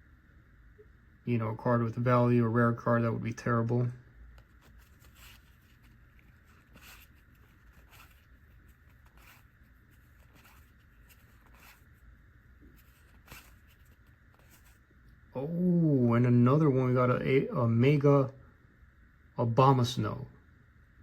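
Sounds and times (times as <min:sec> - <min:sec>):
trading cards rustling: 0:04.4 - 0:12.0, 0:12.6 - 0:14.8.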